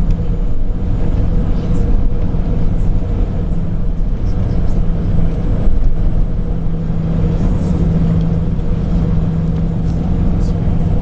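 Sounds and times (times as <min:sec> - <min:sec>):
aircraft cabin rumble: 0:00.0 - 0:11.0
low engine hum: 0:00.0 - 0:11.0.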